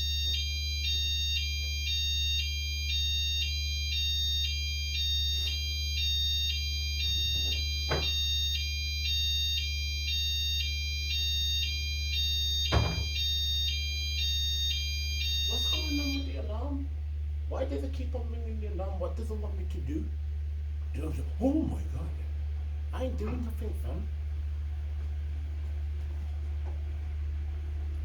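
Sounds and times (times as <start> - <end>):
fire alarm two-tone warble: 0.0 - 16.9
low hum: 2.5 - 28.0
sharp knocks: 7.1 - 8.4, 12.7 - 13.2.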